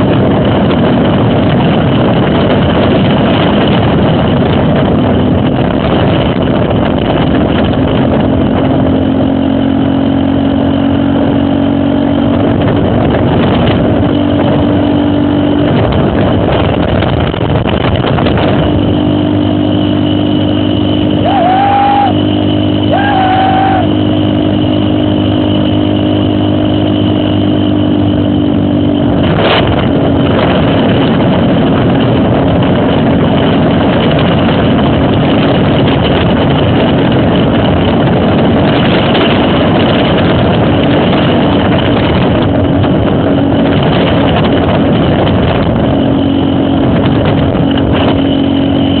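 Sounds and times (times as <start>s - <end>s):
motorcycle engine running: 0.0s - 49.0s.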